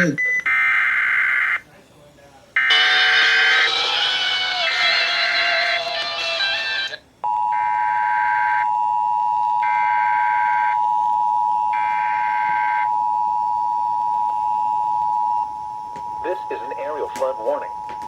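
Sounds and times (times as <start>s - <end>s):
steady warning alarm tone: 2.6s - 3.9s, 6.8s - 18.0s.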